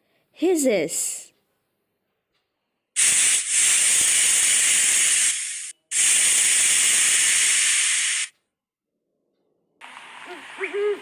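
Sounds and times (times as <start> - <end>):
snake hissing: 3.0 - 8.3.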